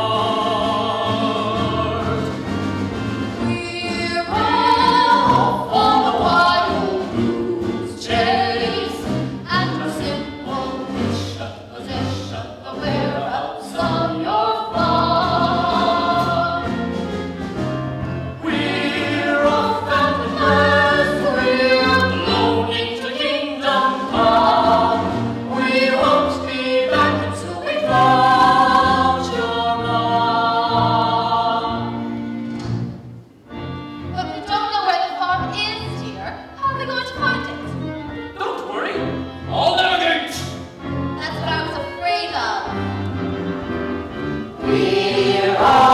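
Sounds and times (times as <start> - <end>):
group singing: 0.0 - 2.6, 3.4 - 16.9, 18.4 - 32.3, 44.5 - 45.9
instrumental accompaniment: 0.0 - 45.9.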